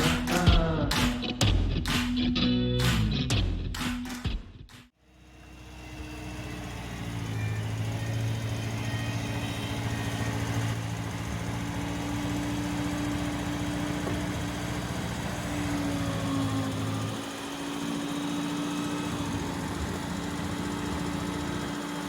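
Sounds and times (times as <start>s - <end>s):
small engine idling: 5.0s - 22.0s.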